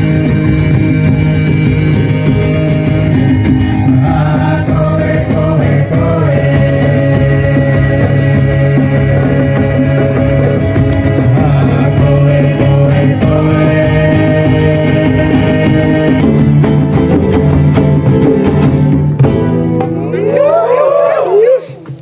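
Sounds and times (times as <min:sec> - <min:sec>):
person singing: 0:00.0 - 0:17.3
guitar: 0:00.0 - 0:22.0.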